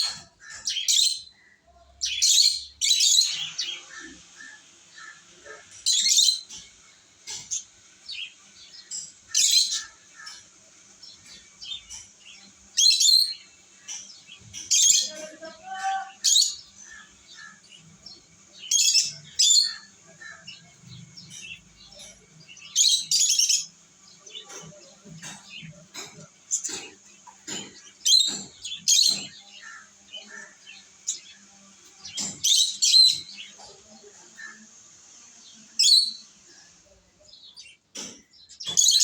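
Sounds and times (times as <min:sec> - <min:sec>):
lovebirds chirping: 0:00.0 - 0:39.0.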